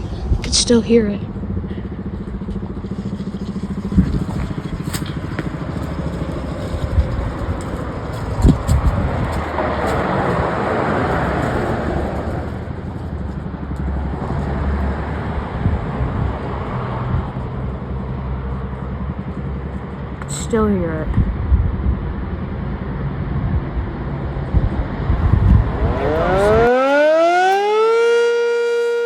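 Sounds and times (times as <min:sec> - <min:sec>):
siren low pulsing hum: 0:01.2 - 0:10.4, 0:25.2 - 0:29.0.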